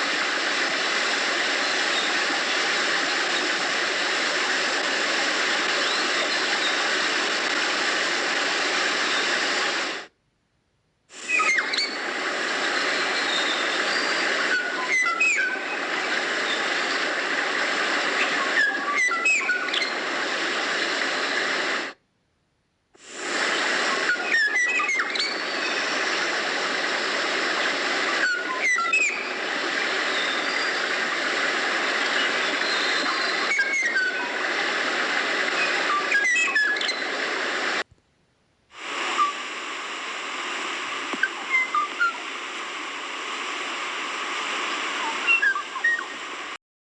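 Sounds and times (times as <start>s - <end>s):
steady hiss: 0.0s - 10.2s, 11.0s - 22.0s, 22.9s - 38.0s, 38.6s - 46.6s
bird whistled calls: 11.3s - 12.1s, 18.6s - 19.9s, 28.1s - 29.3s, 39.1s - 39.4s, 41.2s - 42.2s, 45.0s - 46.2s.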